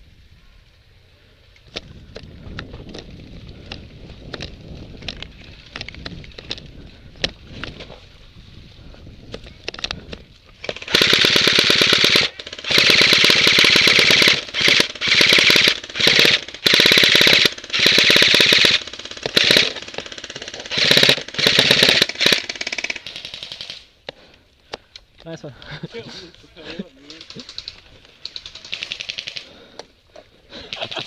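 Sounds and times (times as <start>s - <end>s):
airsoft gun full-auto bursts: 10.6s - 23.9s, 27.2s - 29.5s.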